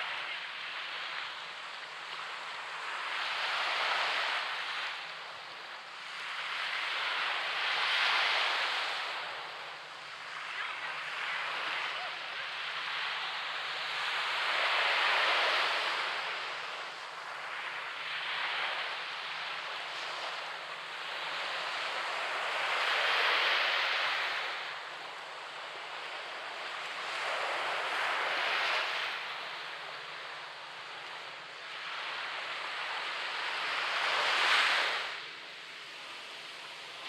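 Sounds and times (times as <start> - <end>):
surf breaking on a beach: 0.0 - 37.0.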